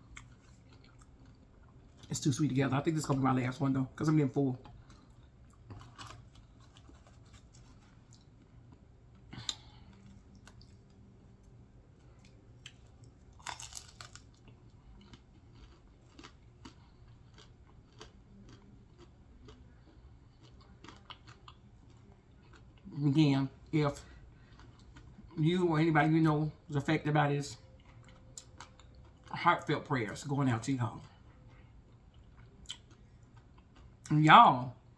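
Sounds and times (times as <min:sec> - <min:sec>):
chewing and mouth clicks: 0:00.0 - 0:02.2, 0:04.1 - 0:11.0, 0:12.2 - 0:23.0, 0:27.6 - 0:29.4, 0:31.4 - 0:34.2.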